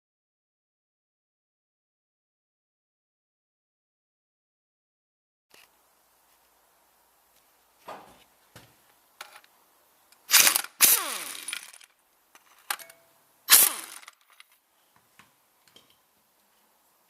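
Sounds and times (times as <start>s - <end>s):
light knocks: 7.8s - 8.7s
metal tools clanking: 12.4s - 13.1s.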